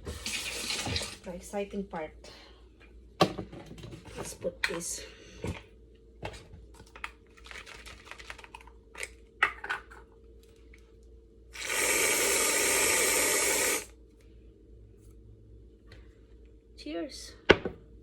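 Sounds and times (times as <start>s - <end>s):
kitchen items clicking and rustling: 3.2s - 10.1s
loud steady hiss: 11.6s - 13.9s.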